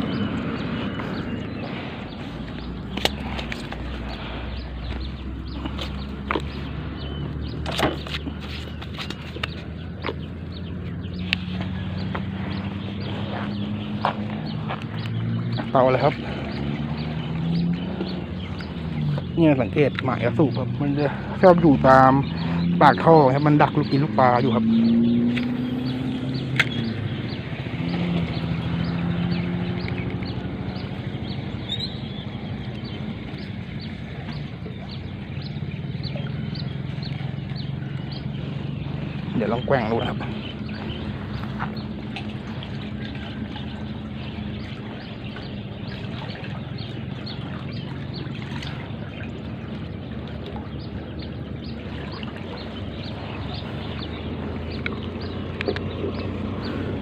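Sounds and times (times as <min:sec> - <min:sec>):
high chirping call: 0:00.0 - 0:48.8
low hum: 0:00.0 - 0:57.0
small water splashes: 0:00.0 - 0:57.0
water pouring and trickling: 0:25.5 - 0:57.0.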